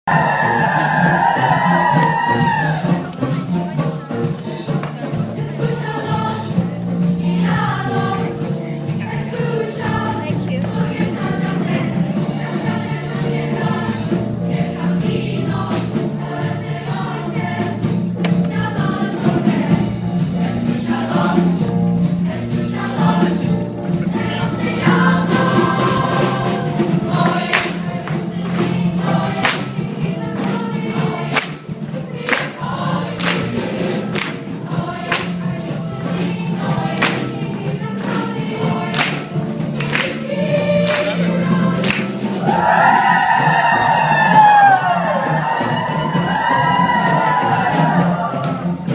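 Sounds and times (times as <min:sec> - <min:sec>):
children's choir singing: 0:00.0 - 0:48.9
sharp percussive strikes: 0:27.0 - 0:42.4.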